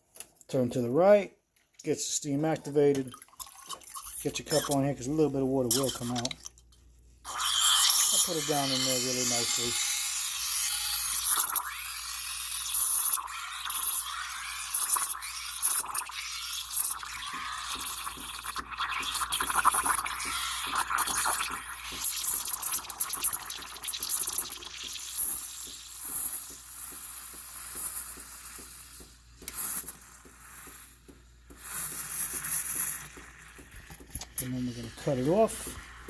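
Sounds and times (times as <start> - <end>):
steam wand hissing and sputtering: 7.3 - 33.7, 34.3 - 36.0.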